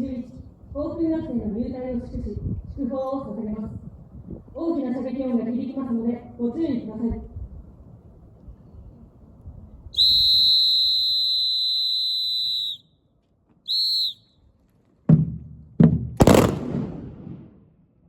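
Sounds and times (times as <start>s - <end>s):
whistle blasts: 10.0s - 13.0s, 13.6s - 14.5s
gunshots with echo: 16.2s - 17.6s.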